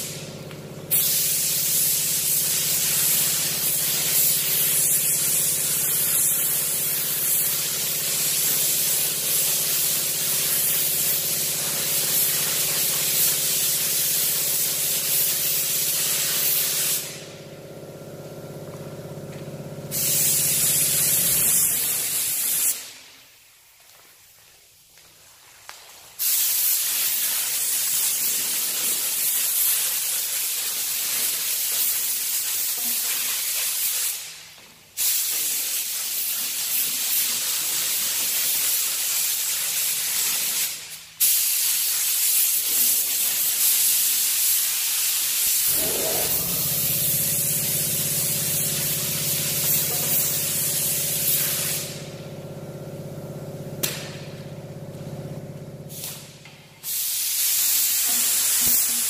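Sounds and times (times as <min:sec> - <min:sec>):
spray gun hissing: 0:00.0 - 0:17.4, 0:19.9 - 0:23.2, 0:26.2 - 0:34.4, 0:35.0 - 0:52.2, 0:55.9 - 0:59.0
motor humming: 0:45.7 - 0:49.3.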